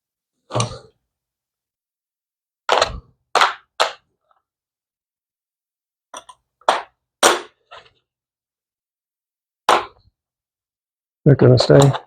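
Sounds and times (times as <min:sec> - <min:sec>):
hard plastic pieces clacking: 0:11.6 - 0:12.0.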